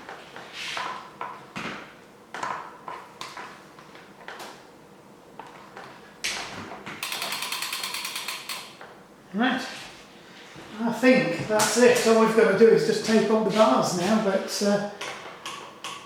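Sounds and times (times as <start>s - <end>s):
tools clicking on a workbench: 7.0s - 8.9s.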